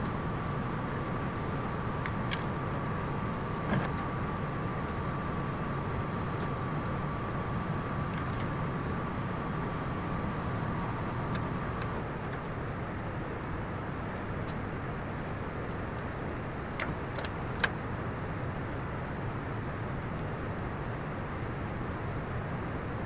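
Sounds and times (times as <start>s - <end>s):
sharp clicks: 0.0s - 12.0s
vehicle engine idling: 0.0s - 12.1s.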